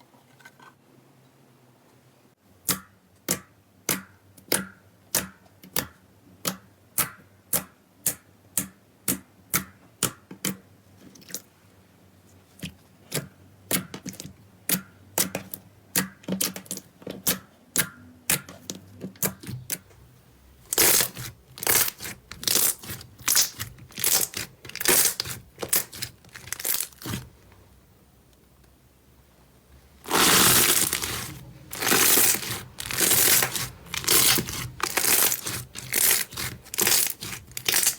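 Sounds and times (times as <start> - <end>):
slime popping and squelching: 20.7 - 27.3, 30.1 - 37.9.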